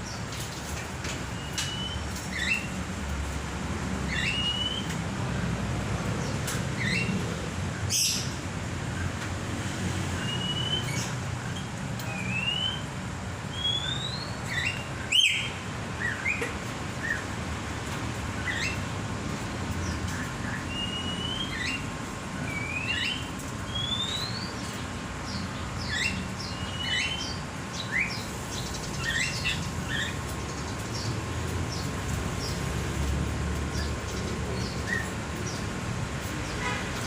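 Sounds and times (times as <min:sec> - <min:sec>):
birds whistling and chirping: 0:01.3 - 0:02.8, 0:04.0 - 0:05.0, 0:06.2 - 0:07.3, 0:07.9 - 0:08.4, 0:10.1 - 0:17.3, 0:18.4 - 0:18.9, 0:19.8 - 0:32.6, 0:33.7 - 0:35.7.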